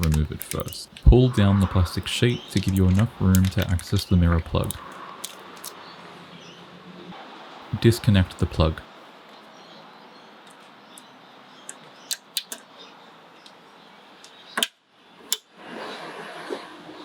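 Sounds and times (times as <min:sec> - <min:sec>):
rustling: 0:00.0 - 0:05.8.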